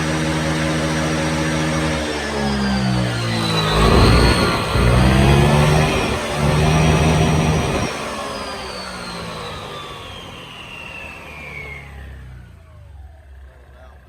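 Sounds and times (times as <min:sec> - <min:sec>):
drivetrain whine winding down: 0:00.0 - 0:14.0
scooter engine revving: 0:01.1 - 0:10.4.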